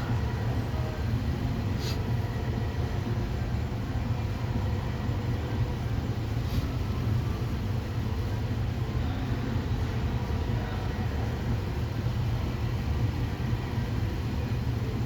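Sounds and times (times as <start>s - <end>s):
faint brief high hisses: 1.8s - 2.0s.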